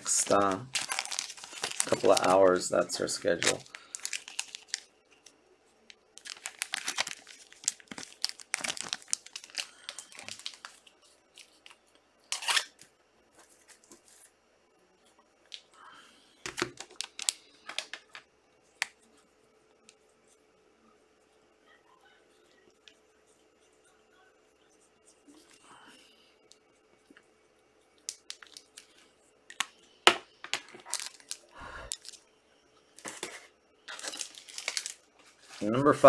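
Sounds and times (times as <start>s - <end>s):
plastic wrappers tearing and crinkling: 0.0s - 4.9s, 6.2s - 12.8s, 16.5s - 18.0s, 28.1s - 28.9s, 30.6s - 32.2s, 33.9s - 35.8s.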